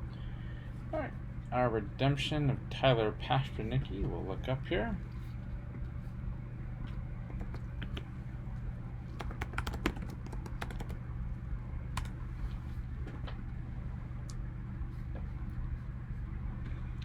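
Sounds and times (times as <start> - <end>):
keyboard typing: 7.3 - 8.1, 9.2 - 11.0.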